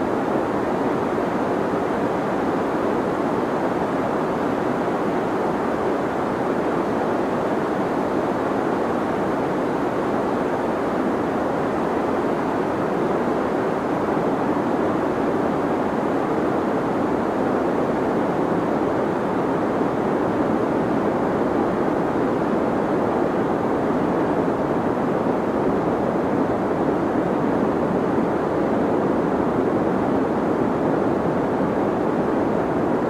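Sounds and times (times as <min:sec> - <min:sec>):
deep white noise: 0:00.0 - 0:33.0.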